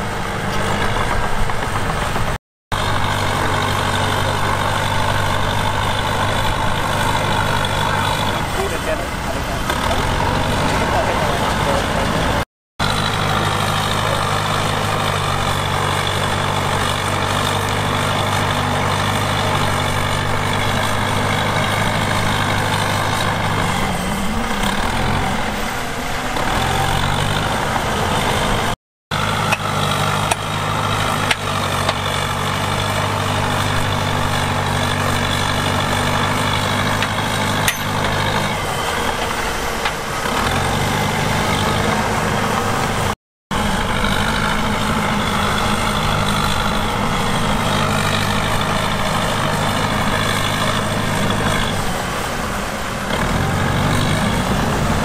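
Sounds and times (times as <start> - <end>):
heavy diesel engine running: 0.0 - 55.0
sharp metal clanks: 37.0 - 38.4.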